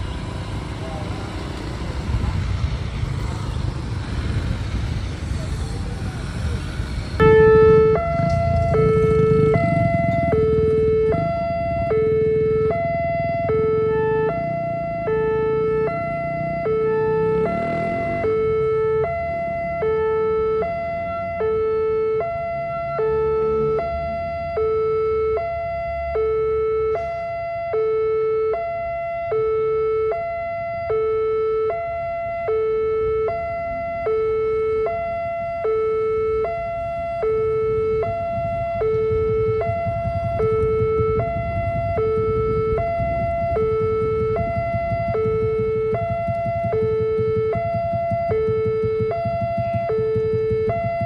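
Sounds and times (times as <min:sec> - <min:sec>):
level crossing two-tone alarm: 0:07.2 - 0:51.0
low rumble: 0:36.6 - 0:51.0.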